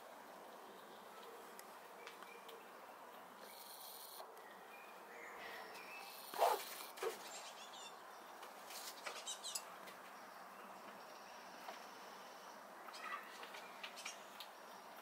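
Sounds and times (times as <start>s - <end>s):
squirrel harsh call: 6.0s - 7.9s.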